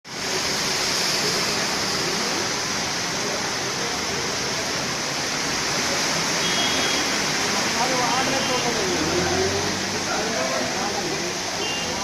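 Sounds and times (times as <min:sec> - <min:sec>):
floodwater rushing: 0:00.1 - 0:12.0.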